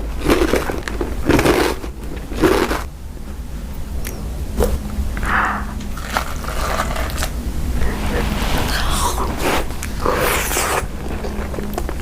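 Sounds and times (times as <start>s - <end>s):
loud chewing crunches: 0.0s - 2.9s.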